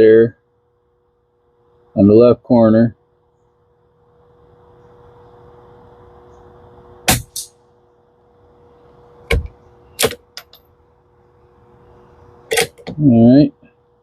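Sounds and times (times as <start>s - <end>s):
electric fan humming: 0.0s - 14.0s
rifle shot: 7.1s - 7.5s.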